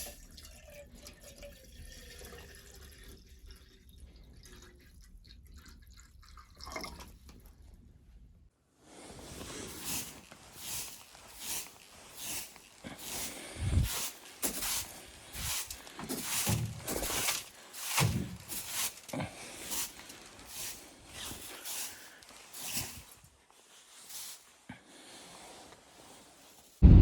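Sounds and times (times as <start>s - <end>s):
footsteps crunching in snow: 9.0s - 26.8s.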